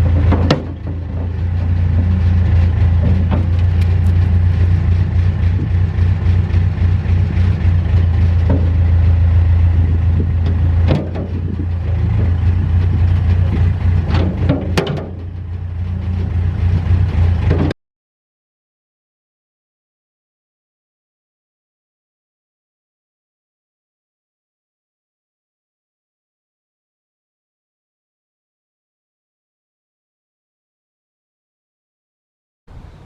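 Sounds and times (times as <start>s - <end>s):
diesel engine running: 0.0s - 17.8s, 32.7s - 33.0s
sharp metal knocks and clanks: 0.1s - 2.2s, 10.4s - 11.6s, 14.0s - 15.4s.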